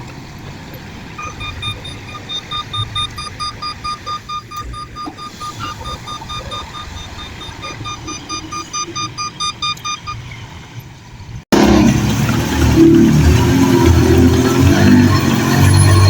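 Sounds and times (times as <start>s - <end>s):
rapid electronic beeping: 1.2s - 10.3s, 12.5s - 16.0s.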